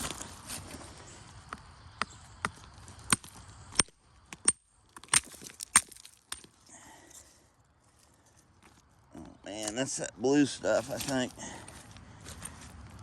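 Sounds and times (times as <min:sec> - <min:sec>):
rocks striking stone on stone: 0:01.5 - 0:06.6.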